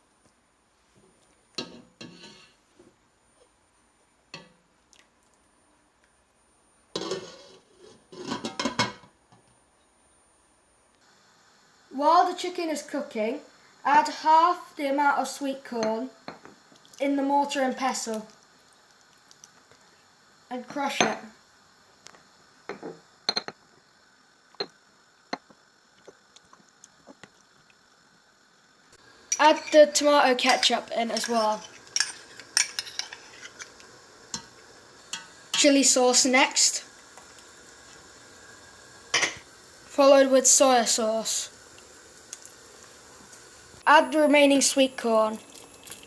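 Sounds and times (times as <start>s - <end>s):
cookware clattering: 7.0s - 9.1s, 30.5s - 33.7s, 39.2s - 39.4s.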